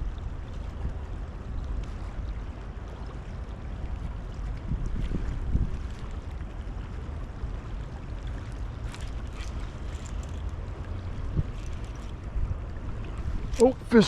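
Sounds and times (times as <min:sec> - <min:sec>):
wind rumbling on microphone: 0:00.0 - 0:14.0
river rushing: 0:06.3 - 0:14.0.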